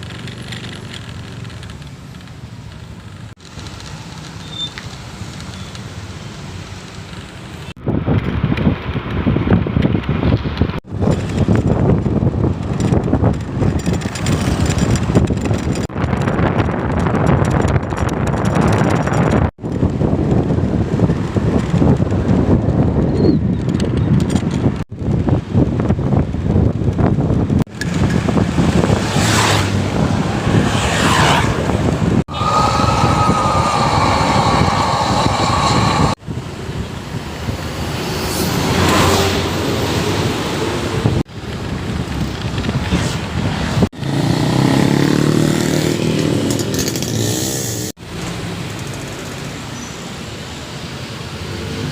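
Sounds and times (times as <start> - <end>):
engine and tyre rumble: 0.0 - 51.9
wind buffeting microphone: 7.8 - 38.9
large vehicle speeding past: 28.9 - 36.2
steady high-pitched tone: 32.3 - 36.2.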